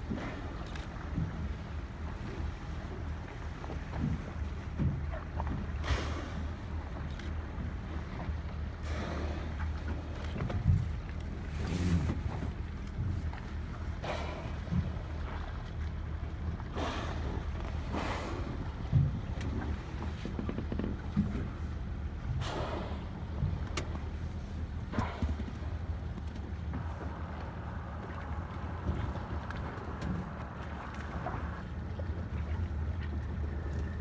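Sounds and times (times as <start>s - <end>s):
boat engine rumbling: 0.0s - 34.0s.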